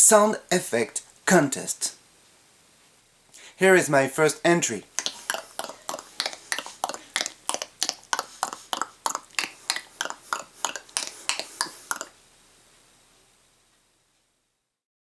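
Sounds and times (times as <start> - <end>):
person making sharp clicks: 5.0 - 12.1.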